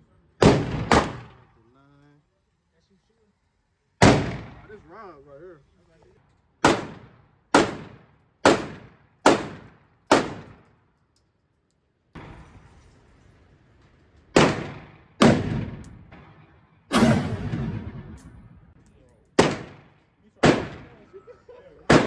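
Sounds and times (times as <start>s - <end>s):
gunshots with echo: 0.4s - 1.4s, 14.4s - 18.2s, 19.4s - 21.0s.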